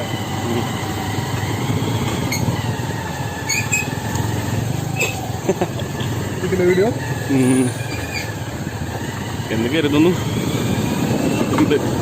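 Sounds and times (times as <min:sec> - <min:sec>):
motorcycle engine rumbling: 0:00.0 - 0:12.0.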